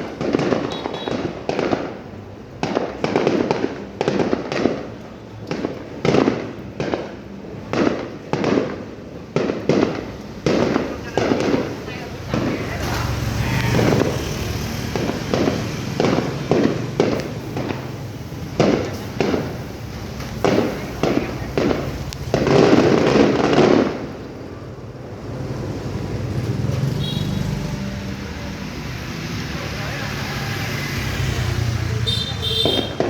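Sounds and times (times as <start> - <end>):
fireworks shell bursts booming: 0.0 - 24.4, 30.7 - 33.0.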